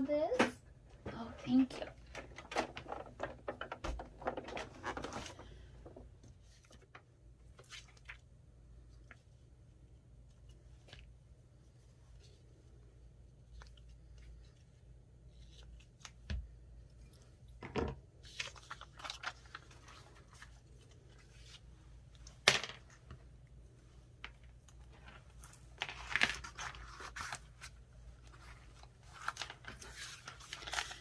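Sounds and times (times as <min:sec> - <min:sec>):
paper and fabric rustling: 0:01.0 - 0:05.7, 0:24.8 - 0:31.0.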